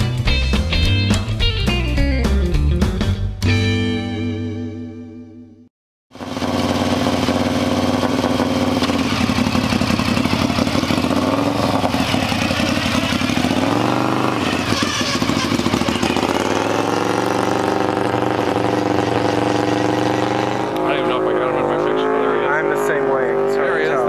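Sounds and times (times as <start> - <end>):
lawnmower engine at high revs: 6.1 - 24.0.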